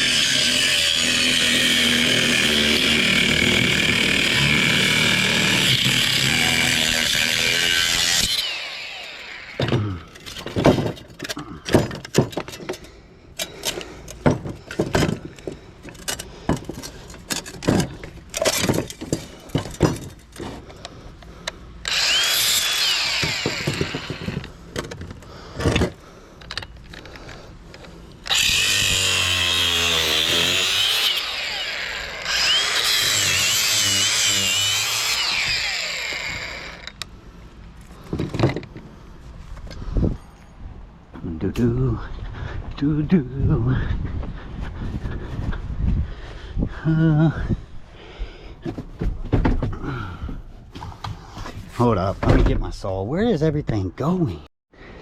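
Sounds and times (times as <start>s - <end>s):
power tool cutting metal: 0.0s - 9.7s, 21.8s - 24.4s, 28.2s - 37.0s.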